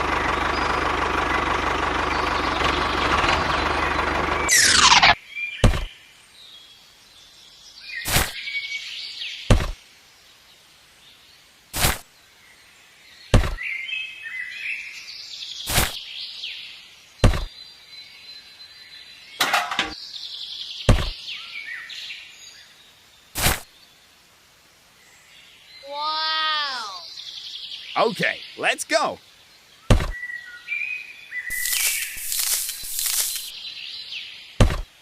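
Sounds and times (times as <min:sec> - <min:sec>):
birds chirping: 0:00.0 - 0:24.2, 0:24.9 - 0:35.0
sharp knocks: 0:05.6 - 0:05.9, 0:09.5 - 0:09.8, 0:13.3 - 0:13.6, 0:17.2 - 0:17.5, 0:20.9 - 0:21.2, 0:29.9 - 0:30.2, 0:34.6 - 0:34.9.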